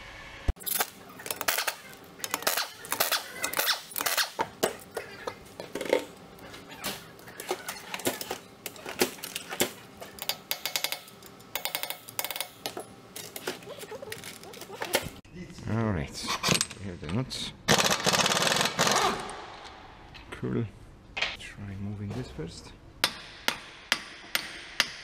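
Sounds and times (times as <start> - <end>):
metal tools clinking on wheel hardware: 0.6 - 15.2.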